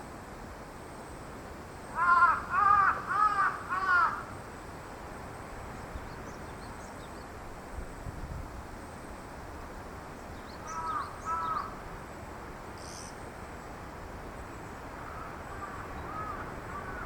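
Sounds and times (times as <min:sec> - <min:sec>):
small birds chirping: 0:10.1 - 0:11.8, 0:12.8 - 0:13.2
harsh bird calls: 0:10.4 - 0:11.8, 0:15.0 - 0:17.0.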